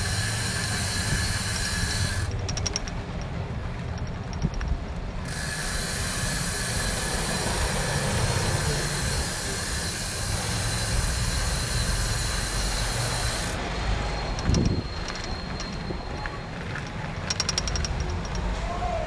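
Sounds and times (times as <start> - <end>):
wind on microphone: 14.4 - 16.3.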